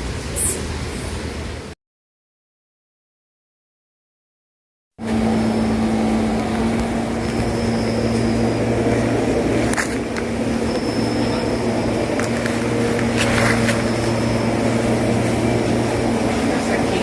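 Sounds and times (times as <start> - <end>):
low mechanical hum with whine: 5.0 - 17.0.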